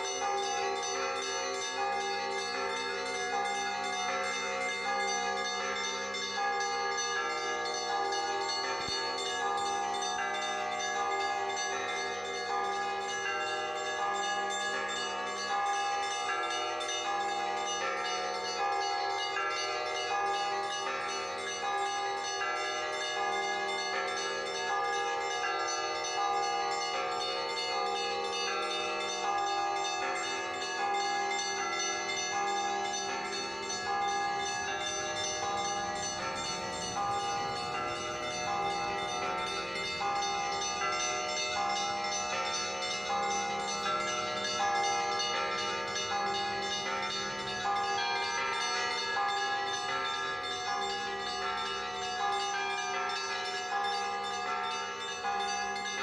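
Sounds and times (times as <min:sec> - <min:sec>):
church bells pealing: 0:00.0 - 0:56.0.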